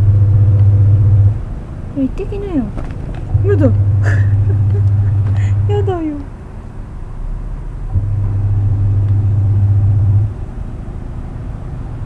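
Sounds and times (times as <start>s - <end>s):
washing machine motor hum: 0.0s - 6.4s, 7.9s - 12.0s.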